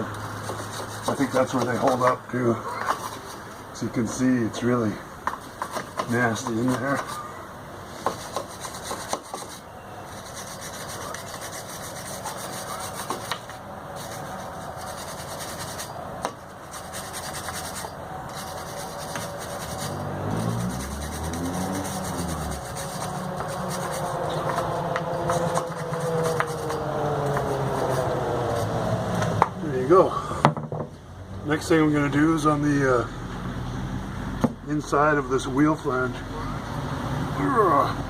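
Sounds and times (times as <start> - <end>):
wire brush scrubbing rust: 0.0 - 4.4, 5.4 - 29.3
low hum bending in pitch: 18.7 - 29.6.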